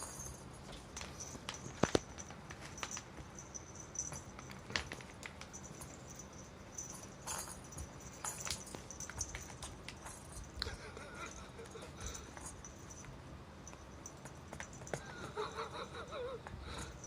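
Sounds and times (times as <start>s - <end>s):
toy taps clicks and rattles: 13.7s - 15.6s.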